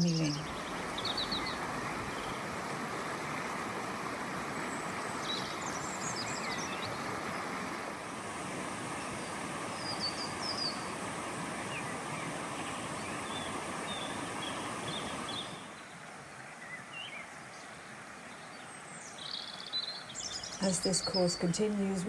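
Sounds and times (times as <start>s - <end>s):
small birds chirping: 0.0s - 2.6s, 3.4s - 7.6s, 8.9s - 22.0s
steady rushing noise: 0.0s - 16.2s.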